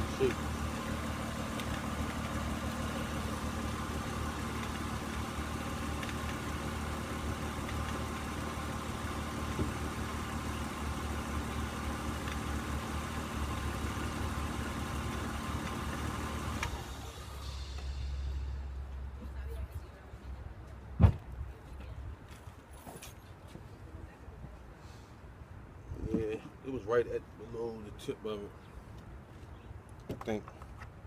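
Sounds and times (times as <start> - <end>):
car engine idling: 0.0 - 20.9.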